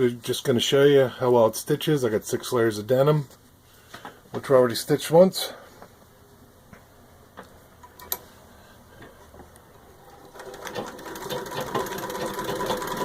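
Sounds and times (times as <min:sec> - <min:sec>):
sewing machine stitching: 0:10.0 - 0:13.0.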